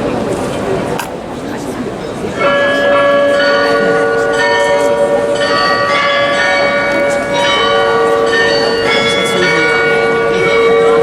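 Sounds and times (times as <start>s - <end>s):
tower bells playing a tune: 2.3s - 11.0s.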